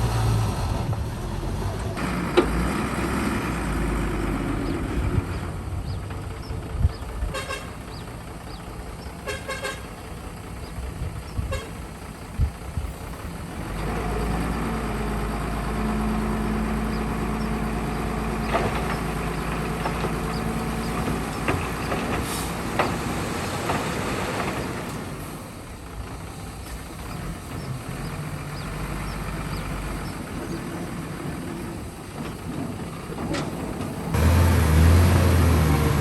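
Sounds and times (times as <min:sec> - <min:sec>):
heavy diesel engine running: 0:00.0 - 0:36.0
vehicle horn tooting: 0:07.2 - 0:07.8, 0:09.2 - 0:10.0, 0:11.5 - 0:11.8.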